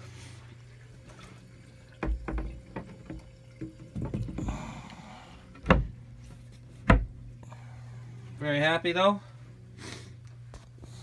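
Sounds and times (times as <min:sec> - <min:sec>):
water splashing through aquarium plumbing: 0:00.0 - 0:07.4
pump humming: 0:00.0 - 0:11.0.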